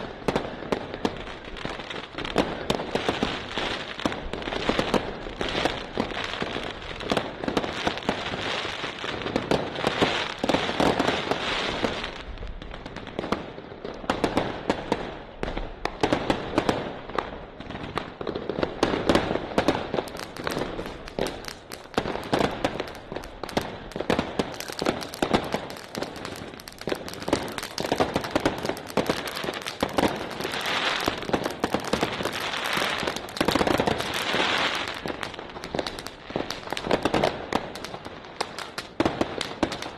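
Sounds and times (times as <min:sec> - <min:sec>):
fireworks firing rapid bangs: 0:17.6 - 0:39.9.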